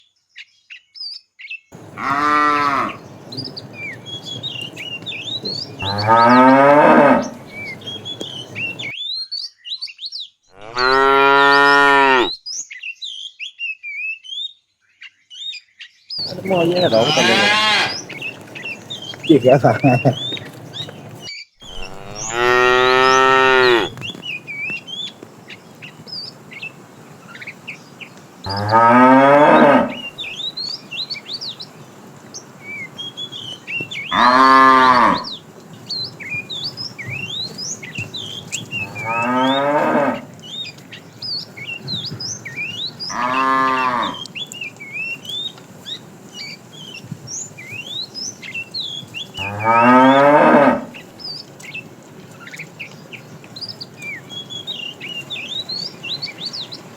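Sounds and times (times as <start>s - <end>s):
birds chirping: 1.8s - 8.9s, 16.2s - 56.9s
cows mooing: 1.8s - 8.9s, 10.6s - 12.3s, 16.2s - 45.4s, 48.9s - 51.1s.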